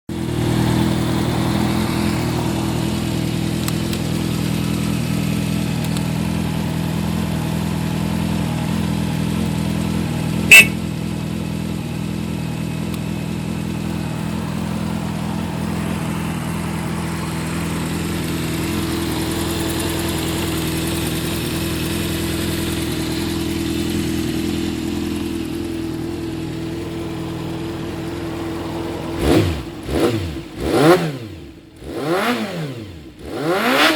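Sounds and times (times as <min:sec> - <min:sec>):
engine running: 0:00.1 - 0:33.9
sharp click: 0:10.5 - 0:10.8.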